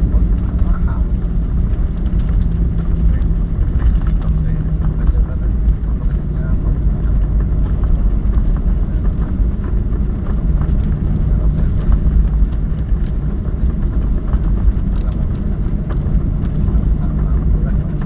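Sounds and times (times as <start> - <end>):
airliner cabin rumble: 0.0 - 18.0.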